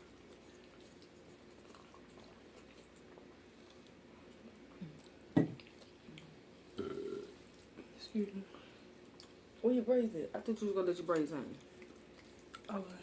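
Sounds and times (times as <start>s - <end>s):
chewing noodles: 0.0s - 6.5s, 8.5s - 9.6s, 11.2s - 13.0s.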